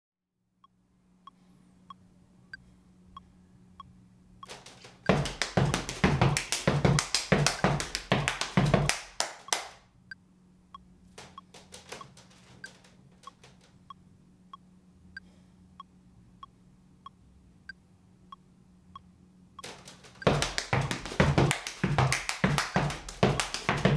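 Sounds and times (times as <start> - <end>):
light steady tick: 0.6 - 4.5, 13.2 - 20.3
stomps and claps: 4.5 - 9.8, 11.2 - 12.5, 19.6 - 23.9.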